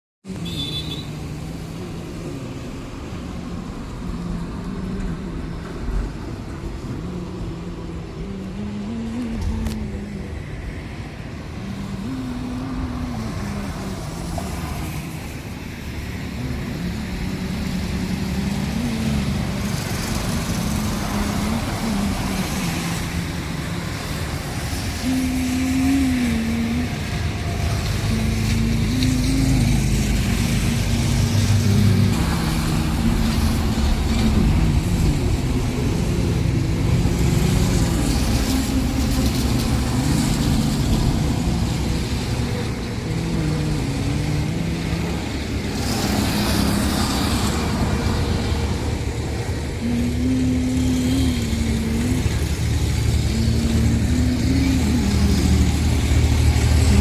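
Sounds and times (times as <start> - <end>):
vehicle engine revving: 16.0 - 57.0.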